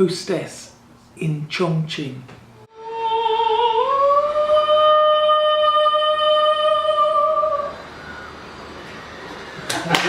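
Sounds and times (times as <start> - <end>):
woman singing operatic note: 2.7 - 8.0.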